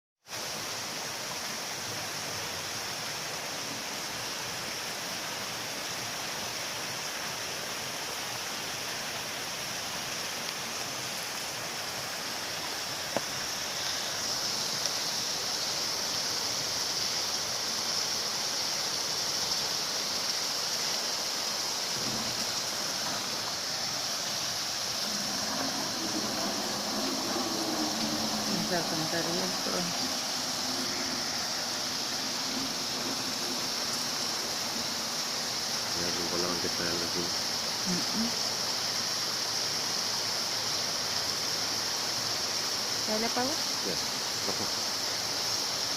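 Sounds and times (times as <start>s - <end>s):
heavy rain falling: 0.3s - 45.9s
low pitched hum: 24.9s - 36.3s.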